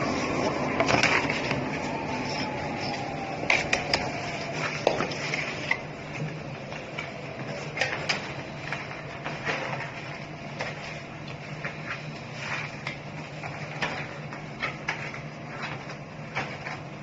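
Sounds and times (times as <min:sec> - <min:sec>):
cutting machine humming: 0:00.0 - 0:08.5
faint machine whine: 0:00.0 - 0:17.0.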